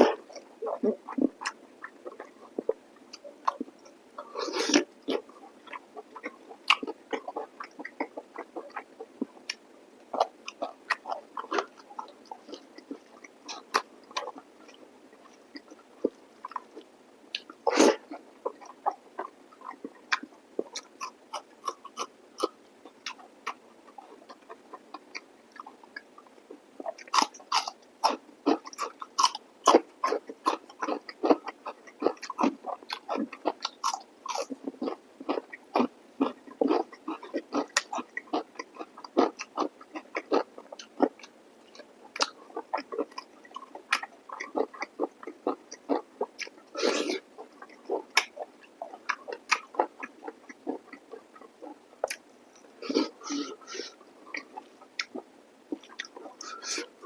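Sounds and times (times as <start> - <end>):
close chewing and eating: 0.0 - 57.0
mouth clicks: 43.9 - 57.0.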